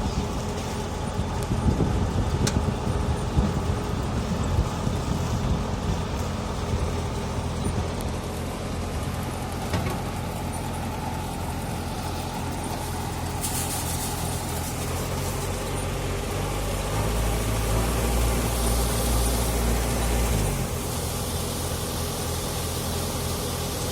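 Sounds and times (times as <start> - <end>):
diesel engine running: 0.0 - 23.9
hiss: 10.3 - 23.9.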